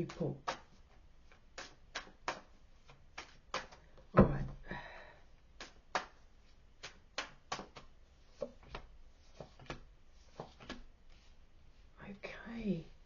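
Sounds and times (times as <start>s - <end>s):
cards being shuffled: 6.8s - 11.3s.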